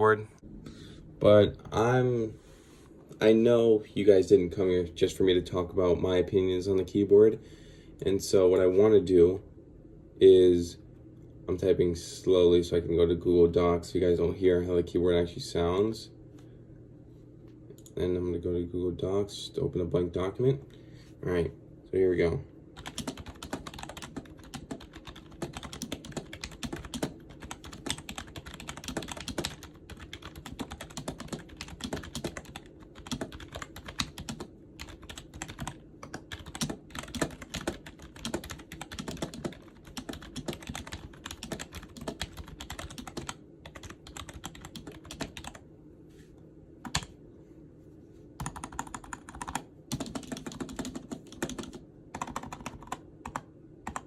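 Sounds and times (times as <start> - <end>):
typing on a keyboard: 22.8 - 45.6, 48.4 - 54.0.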